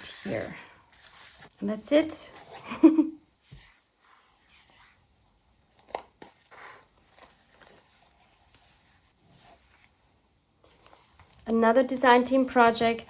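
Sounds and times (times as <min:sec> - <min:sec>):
paper rustling: 0:05.8 - 0:13.0.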